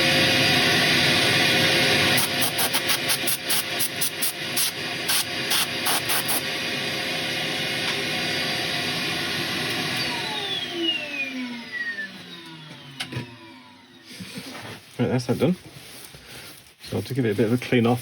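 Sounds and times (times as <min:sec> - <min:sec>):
wood lathe motor whine: 0:00.0 - 0:02.2, 0:06.4 - 0:14.6.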